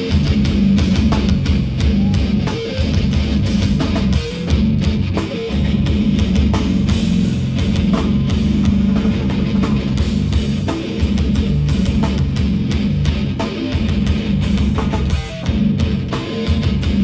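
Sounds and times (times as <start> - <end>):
distorted electric guitars: 0.0 - 17.0
drum kit: 0.0 - 17.0.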